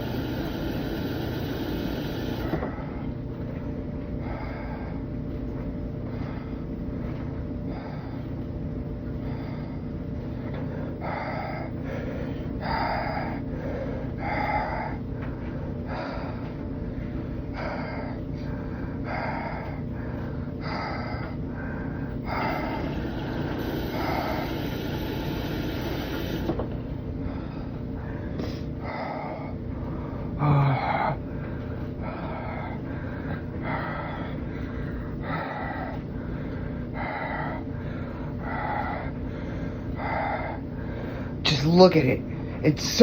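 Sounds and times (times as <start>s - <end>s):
washing machine humming: 0.0s - 43.0s
washing machine swishing: 22.5s - 26.8s.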